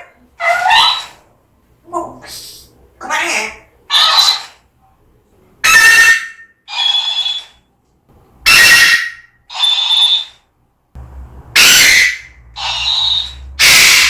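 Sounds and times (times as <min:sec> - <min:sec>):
parrot shrill two-tone calls: 0:00.4 - 0:01.2, 0:05.6 - 0:07.6, 0:08.4 - 0:10.4, 0:11.6 - 0:14.0
low rumble: 0:11.0 - 0:11.6.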